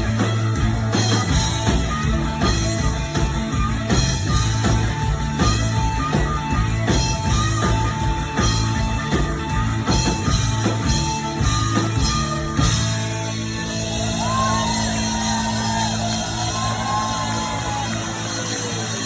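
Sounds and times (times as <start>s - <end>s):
live rock band playing: 0.0s - 19.0s
crowd whooping and shouting: 11.8s - 19.0s.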